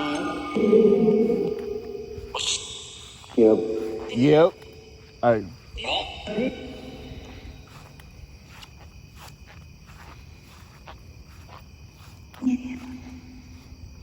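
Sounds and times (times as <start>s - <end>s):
crickets chirping: 0.0s - 14.0s.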